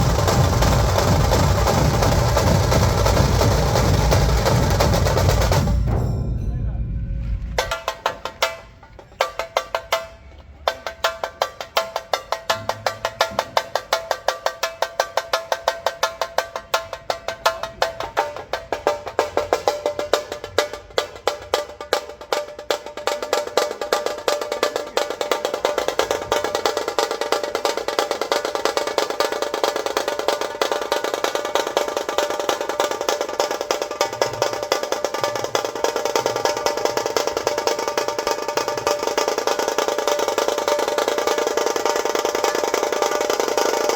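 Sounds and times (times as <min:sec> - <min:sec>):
low drum beats: 0:00.0 - 0:09.7
drums struck with sticks: 0:00.0 - 0:10.1.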